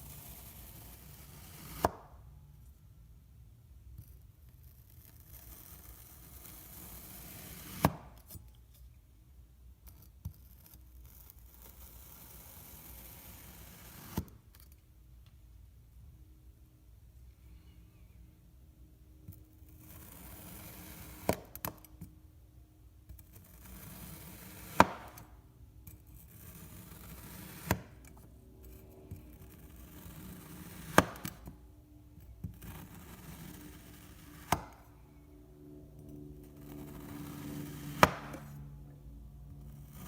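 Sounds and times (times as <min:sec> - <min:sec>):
sharp tap of blade: 0:34.5 - 0:34.8, 0:38.0 - 0:38.4.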